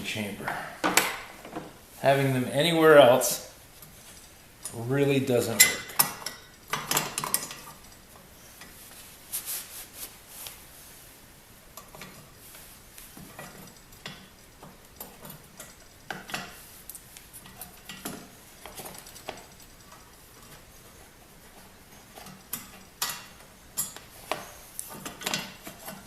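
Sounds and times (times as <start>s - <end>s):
hand tools clicking on metal: 5.5s - 8.0s.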